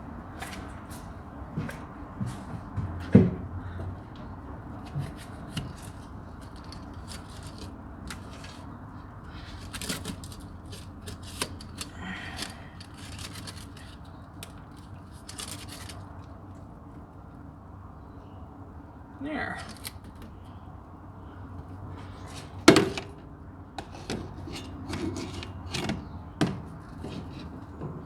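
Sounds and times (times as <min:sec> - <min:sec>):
hand tools clicking on metal: 0:04.8 - 0:08.7, 0:09.3 - 0:16.1, 0:19.7 - 0:20.2.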